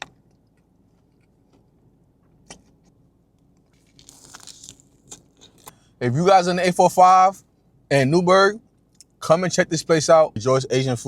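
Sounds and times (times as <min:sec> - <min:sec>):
crunching bites of fried food: 0:03.6 - 0:05.9.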